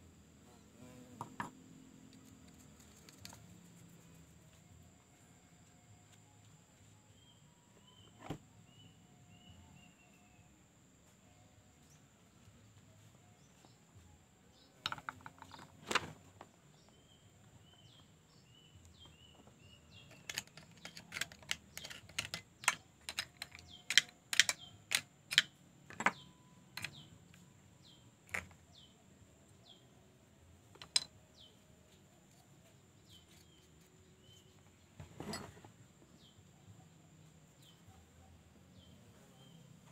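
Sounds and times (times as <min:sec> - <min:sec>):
bird chirping: 0:06.8 - 0:15.8, 0:16.5 - 0:30.1, 0:30.7 - 0:39.9
hand tools clicking and knocking: 0:20.0 - 0:27.0, 0:30.7 - 0:31.1.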